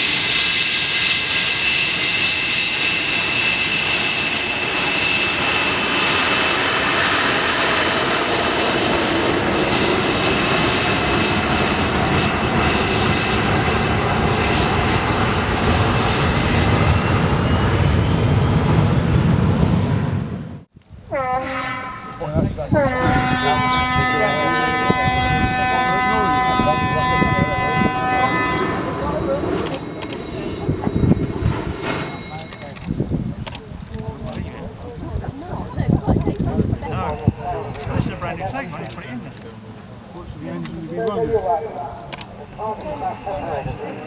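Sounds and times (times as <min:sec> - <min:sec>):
jet engines roaring with whine: 0:00.0 - 0:21.1, 0:21.8 - 0:44.0.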